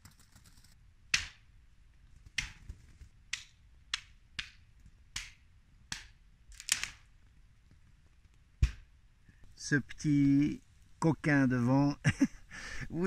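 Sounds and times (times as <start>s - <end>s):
water dripping onto a tent: 3.3s - 7.0s.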